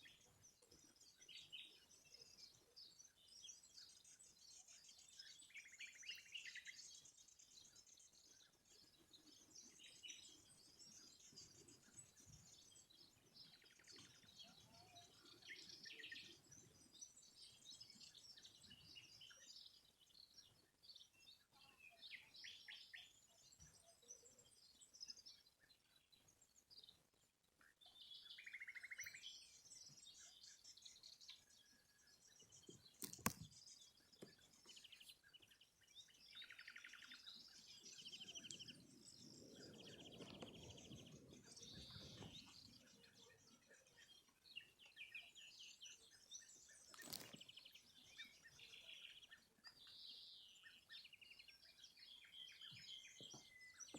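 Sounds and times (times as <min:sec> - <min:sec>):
songbirds chirping and trilling: 0:00.0 - 0:53.9
sharp click: 0:33.0 - 0:33.5.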